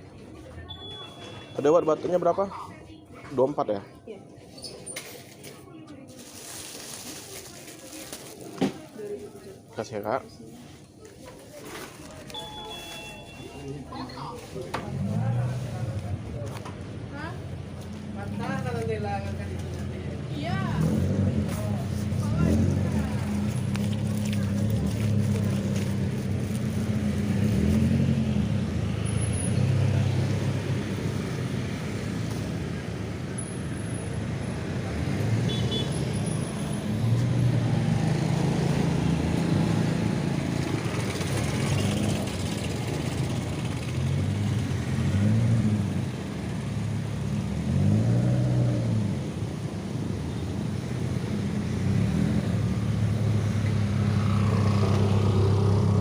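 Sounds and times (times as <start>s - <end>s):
vehicle engine revving: 14.8s - 16.5s, 19.7s - 32.7s, 34.6s - 49.4s.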